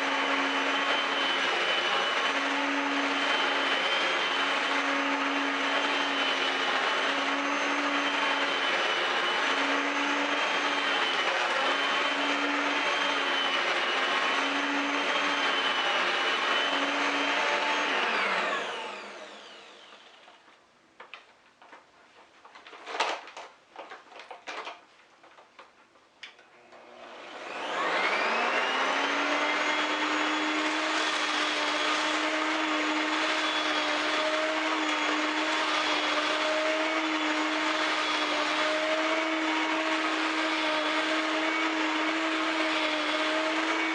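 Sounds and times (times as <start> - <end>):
vacuum cleaner motor whining: 0.0 - 20.5, 26.4 - 43.9.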